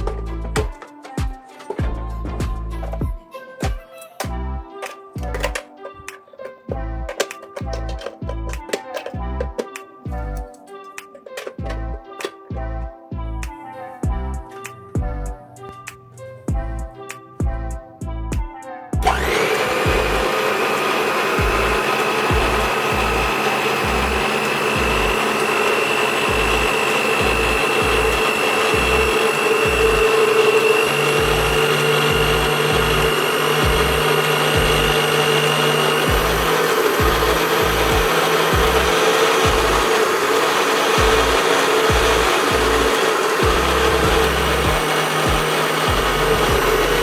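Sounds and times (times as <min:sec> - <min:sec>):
electric mixer motor whining: 0:00.0 - 0:03.2, 0:04.2 - 0:12.9, 0:19.0 - 0:47.0
background music with bass beat: 0:00.0 - 0:19.1, 0:41.0 - 0:46.8.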